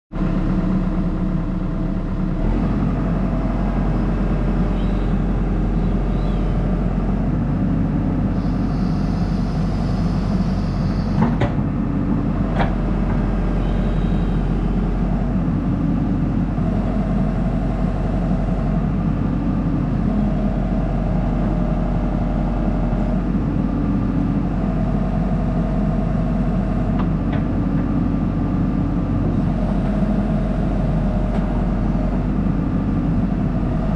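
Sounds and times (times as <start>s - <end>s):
excavator diesel engine running: 0.1s - 33.9s
hydraulic whine: 8.2s - 11.7s, 12.4s - 15.2s.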